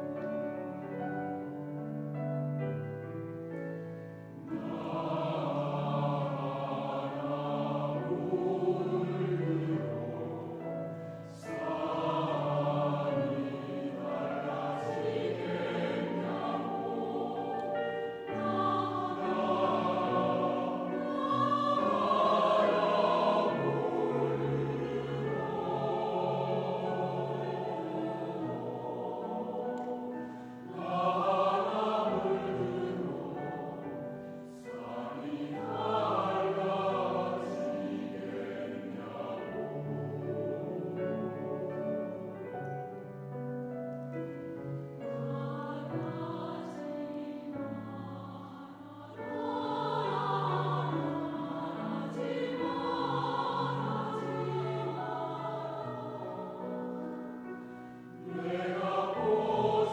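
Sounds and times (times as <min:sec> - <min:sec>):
choir singing: 0:02.6 - 0:59.9
singers breathing: 0:30.2 - 0:30.7.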